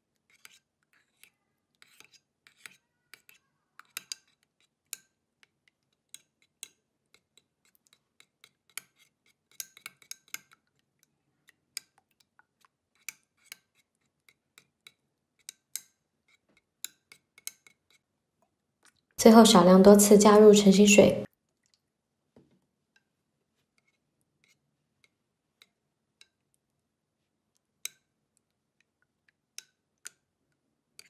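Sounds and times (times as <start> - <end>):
stirring tool tapping container: 0.2 - 18.0.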